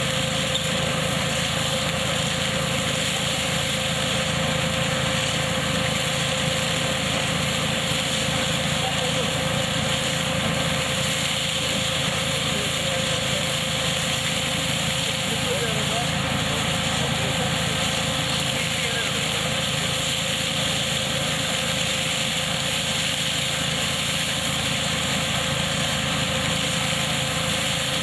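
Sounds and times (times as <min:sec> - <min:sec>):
harvesting machine drone: 0:00.1 - 0:28.0.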